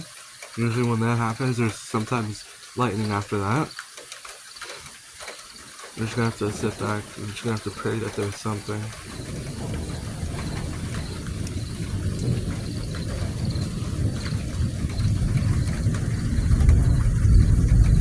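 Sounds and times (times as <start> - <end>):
low rumble of thunder: 6.0 - 18.0.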